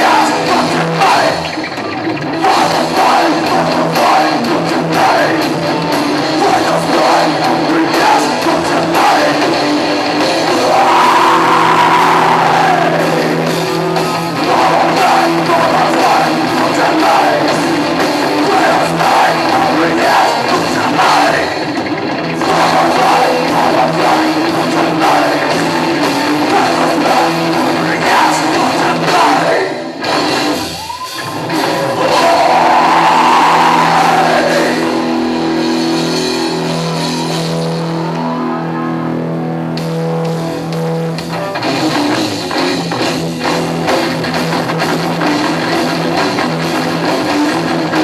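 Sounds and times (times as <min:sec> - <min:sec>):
person singing: 0:00.0 - 0:01.6, 0:02.4 - 0:21.7, 0:22.4 - 0:30.0, 0:31.0 - 0:39.0
drum kit: 0:00.0 - 0:38.4, 0:39.5 - 0:48.0
distorted electric guitars: 0:00.0 - 0:48.0.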